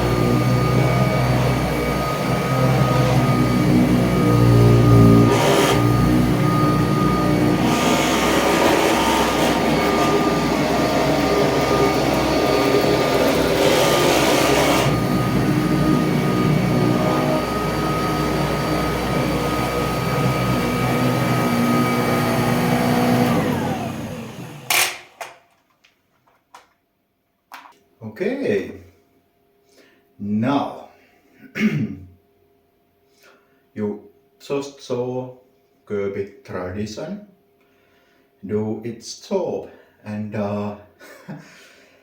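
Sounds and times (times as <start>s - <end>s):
vacuum cleaner whining: 0.0s - 25.3s
motor winding down: 0.1s - 25.0s.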